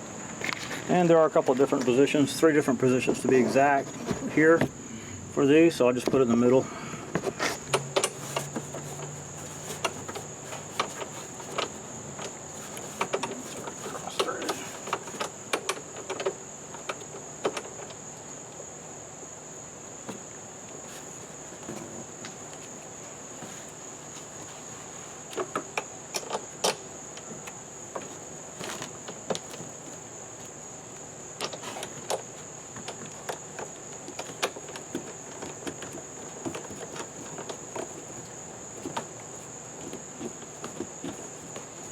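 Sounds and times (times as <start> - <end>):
crickets trilling: 0.0 - 41.9
clicks and knocks of handled parts: 7.1 - 18.0, 31.4 - 41.9.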